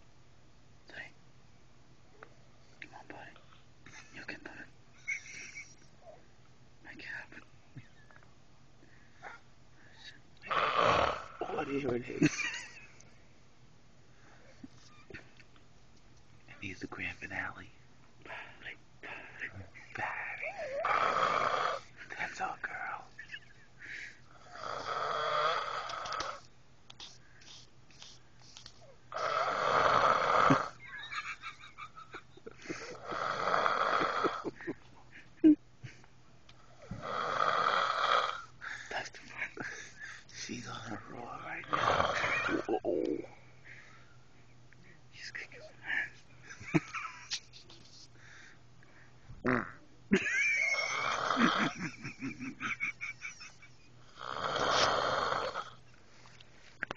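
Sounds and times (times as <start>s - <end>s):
woman snoring: 10.5s - 11.4s, 20.4s - 21.9s, 24.4s - 26.4s, 29.1s - 30.8s, 32.9s - 34.6s, 36.8s - 38.5s, 41.6s - 43.3s, 50.7s - 51.9s, 54.1s - 55.8s.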